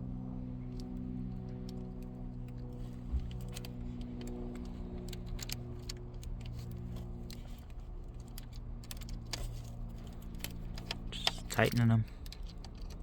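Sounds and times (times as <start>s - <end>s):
steady low hum: 0.0s - 13.0s
metallic clicks of screws: 12.1s - 13.0s.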